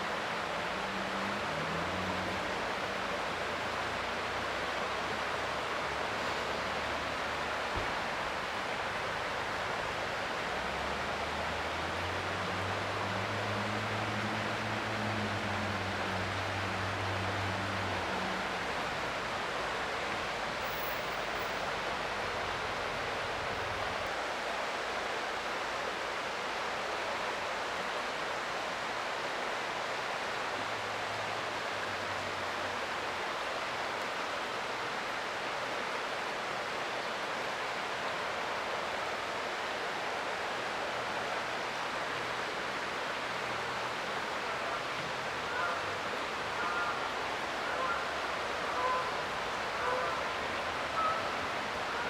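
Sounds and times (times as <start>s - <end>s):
creek water rushing: 0.0s - 52.0s.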